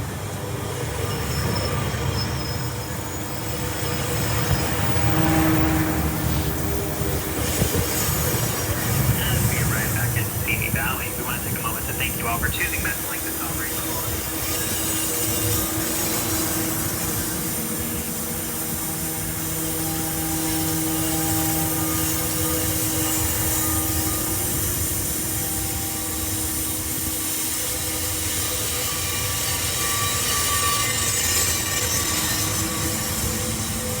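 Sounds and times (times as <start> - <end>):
diesel locomotive humming: 0.0 - 27.1.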